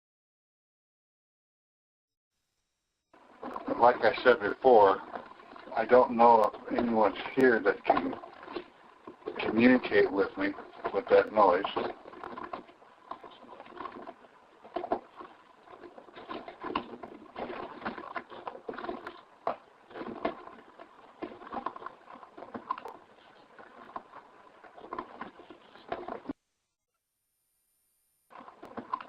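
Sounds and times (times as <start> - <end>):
gravel crunching and rattling: 3.3 - 26.4.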